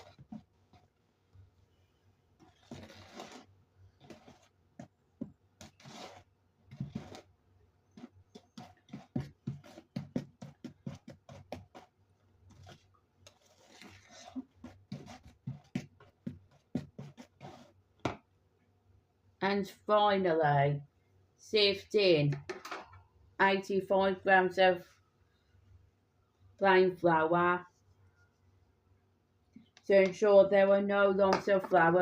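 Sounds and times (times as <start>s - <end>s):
wooden spoon stirring batter in bowl: 0.0s - 1.7s, 2.4s - 18.3s.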